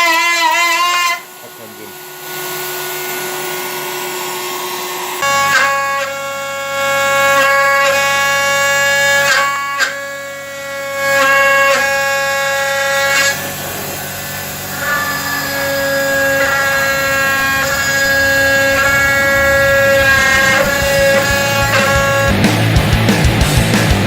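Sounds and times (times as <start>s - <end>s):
sustained melody music: 15.7s - 24.0s.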